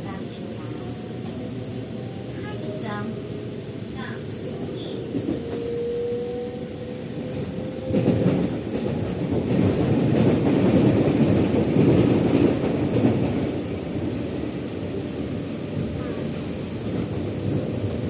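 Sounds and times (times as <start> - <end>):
faint train whine: 0.0 - 9.8
train wheels rumbling: 0.0 - 18.0.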